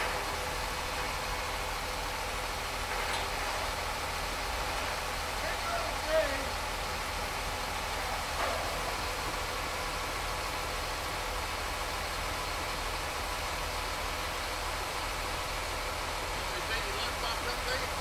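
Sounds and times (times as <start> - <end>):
heavy equipment engine noise: 0.0 - 18.0.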